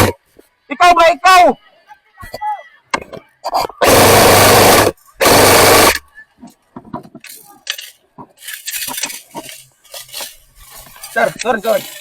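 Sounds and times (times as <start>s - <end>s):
airsoft gun full-auto fire: 3.8s - 6.0s
gear clicks and rattles: 7.2s - 12.0s.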